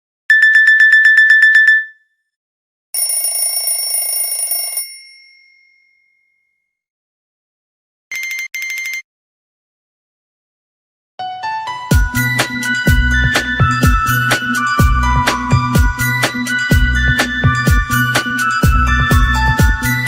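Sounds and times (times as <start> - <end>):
high ringing alert: 0.3 - 2.0, 8.1 - 9.0.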